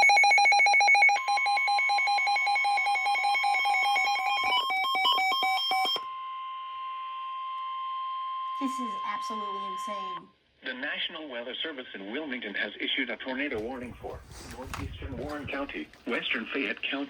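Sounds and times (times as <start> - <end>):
rapid electronic alarm beeping: 0.0 - 6.0, 8.3 - 10.3
steady warning alarm tone: 0.0 - 10.3.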